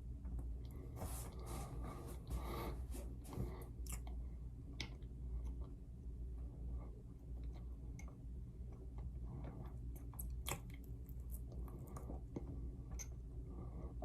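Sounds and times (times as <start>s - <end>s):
steady low hum: 0.0s - 14.0s
soft clicks and crunchy crackles: 6.4s - 14.0s.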